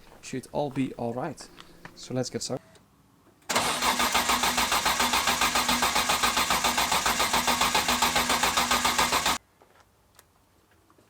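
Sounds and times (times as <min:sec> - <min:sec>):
engine cranking on starter: 0:03.5 - 0:09.4.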